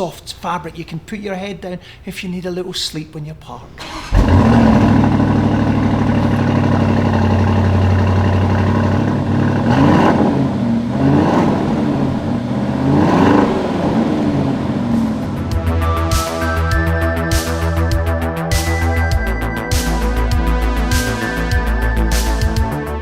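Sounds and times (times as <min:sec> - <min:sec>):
car engine idling and revving: 0:03.8 - 0:16.2.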